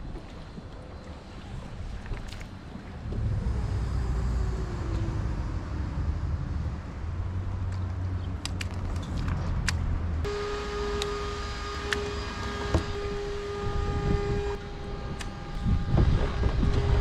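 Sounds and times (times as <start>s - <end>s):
vehicle engine rumble: 0.0s - 17.0s
multi-pitched hum: 10.0s - 17.0s.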